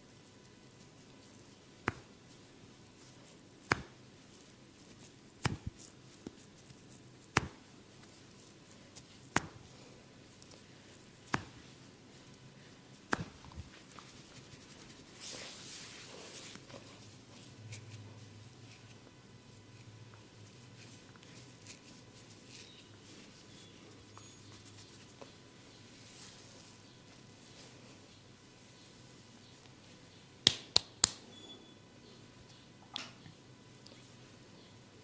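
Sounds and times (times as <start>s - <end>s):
hands snapping clicks: 30.4s - 31.2s.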